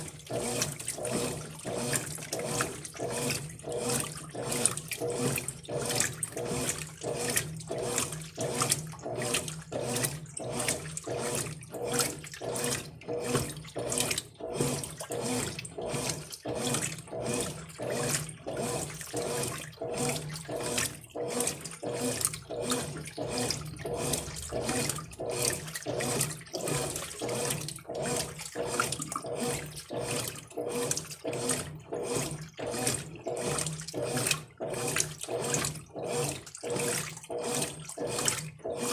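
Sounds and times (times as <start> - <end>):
motor hum: 0.0 - 38.9
water sloshing in washing machine: 0.0 - 38.9.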